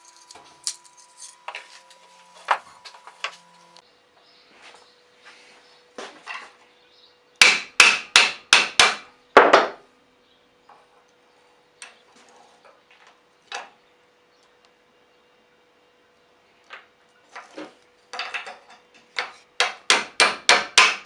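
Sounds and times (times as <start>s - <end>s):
hammer striking metal: 7.4s - 9.8s, 19.2s - 21.0s.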